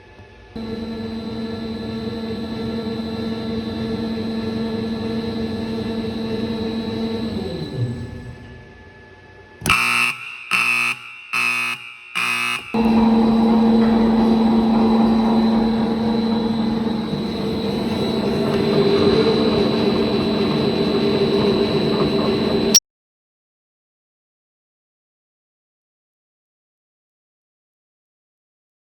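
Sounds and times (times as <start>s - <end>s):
dough mixer motor humming: 0.6s - 8.4s, 12.8s - 22.8s
short buzzer blasts: 9.7s - 22.7s.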